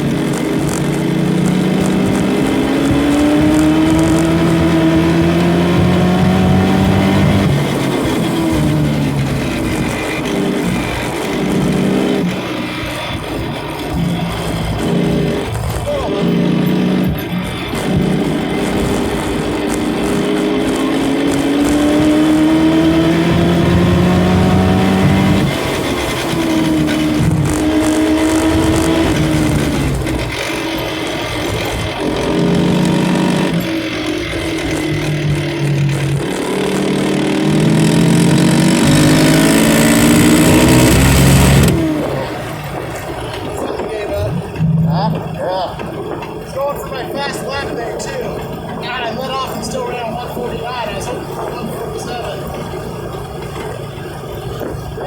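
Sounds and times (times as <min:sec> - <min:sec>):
car engine revving at full throttle: 0:00.0 - 0:55.0.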